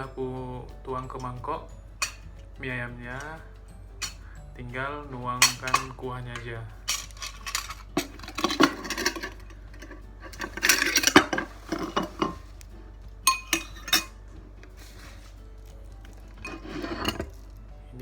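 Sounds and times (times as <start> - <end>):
bowl and utensils clinking: 0.9 - 18.0
scraping and rustling: 5.4 - 18.0.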